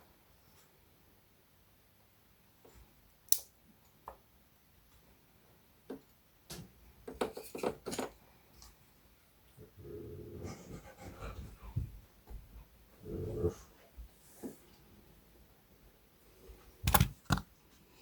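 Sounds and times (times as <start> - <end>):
sharp clicks and knocks: 16.8 - 17.5.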